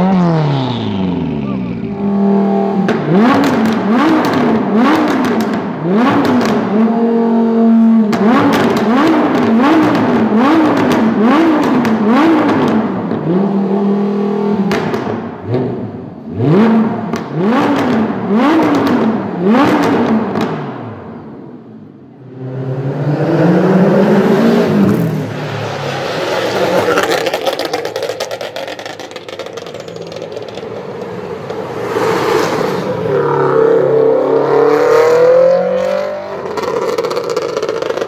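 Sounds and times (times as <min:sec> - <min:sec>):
sports car engine revving: 0:00.0 - 0:38.0
exhaust pops and crackles: 0:02.9 - 0:06.7, 0:08.1 - 0:12.9, 0:14.7 - 0:15.4, 0:17.1 - 0:20.8, 0:26.6 - 0:31.6, 0:36.4 - 0:38.0.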